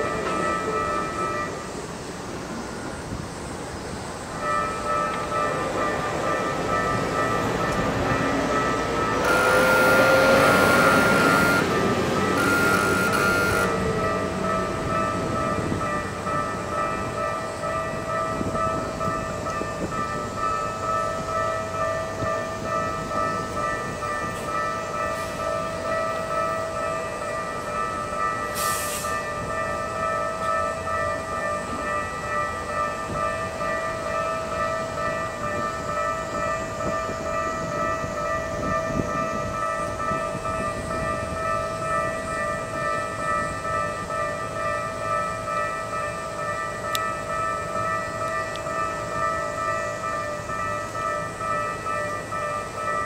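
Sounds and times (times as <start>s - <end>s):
level-crossing warning bell: 0.0s - 53.0s
short hiss: 28.6s - 29.2s.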